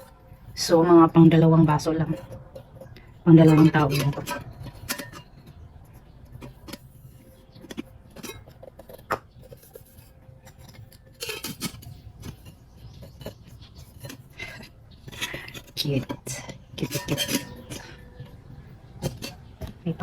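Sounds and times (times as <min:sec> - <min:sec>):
metal kettle clinks and taps: 0:02.0 - 0:05.6, 0:15.1 - 0:18.3.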